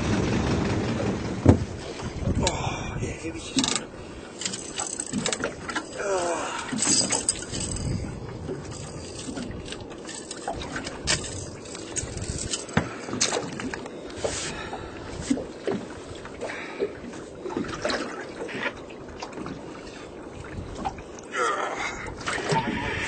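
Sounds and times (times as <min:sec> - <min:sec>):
knocks and clatter on deck: 0:00.0 - 0:01.8
water splashing against boat: 0:00.0 - 0:23.0.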